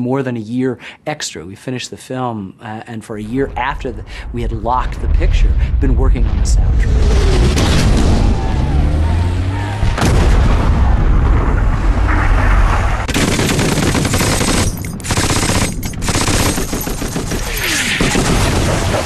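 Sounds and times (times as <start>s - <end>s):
explosions rumbling: 3.3s - 14.7s
machine-gun fire: 13.1s - 19.0s.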